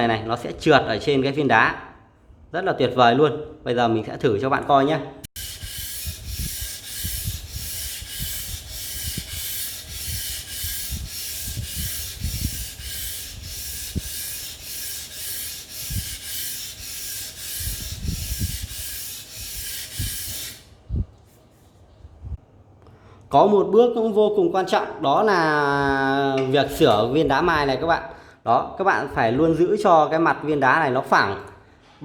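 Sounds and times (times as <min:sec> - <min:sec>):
knife grinding on whetstone: 0:05.4 - 0:20.7.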